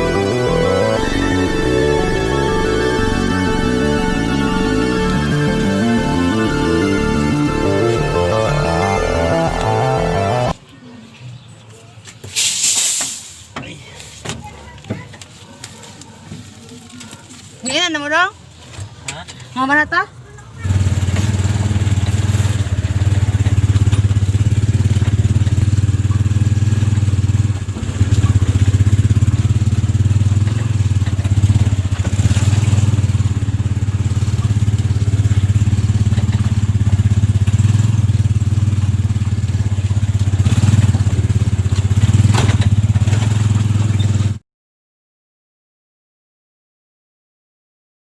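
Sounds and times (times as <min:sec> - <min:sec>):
engine humming: 0:00.0 - 0:10.6.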